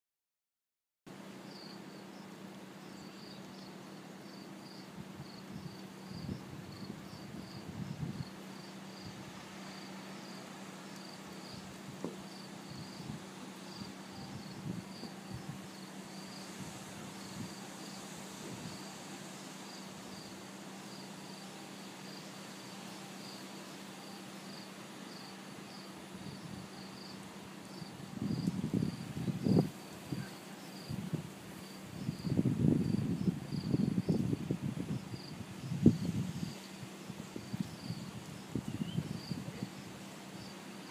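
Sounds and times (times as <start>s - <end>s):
insect chirping: 1.4s - 40.9s
wind buffeting microphone: 5.0s - 9.4s, 11.4s - 15.7s, 27.7s - 39.8s.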